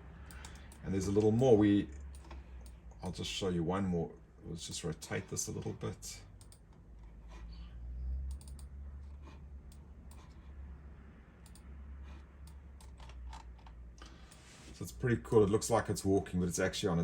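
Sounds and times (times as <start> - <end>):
low steady hum: 0.0 - 17.0
mouse and keyboard clicks: 0.3 - 0.8, 8.2 - 10.5, 11.4 - 14.4.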